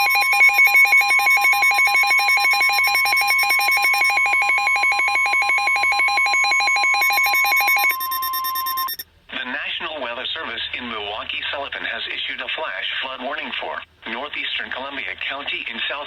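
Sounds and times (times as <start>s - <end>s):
rapidly warbling alarm: 0.0s - 9.0s
steady alert tone: 0.0s - 9.0s.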